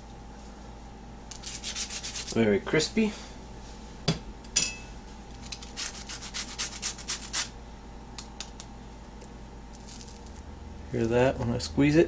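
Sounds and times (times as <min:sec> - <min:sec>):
crispy batter crust crackling: 0:09.7 - 0:11.7.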